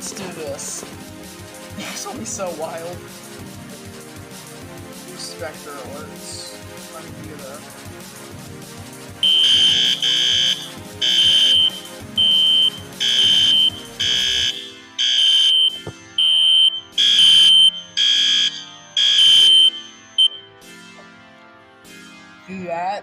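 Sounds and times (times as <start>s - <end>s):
electronic alarm horn blasts: 9.2s - 20.6s.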